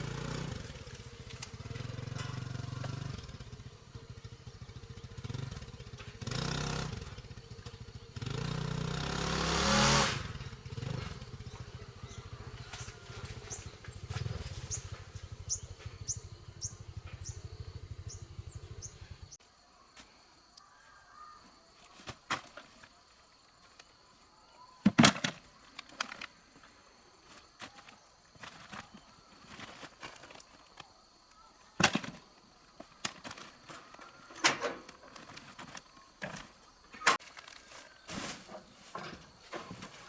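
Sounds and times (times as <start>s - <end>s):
small motorcycle engine revving: 0.0s - 19.4s.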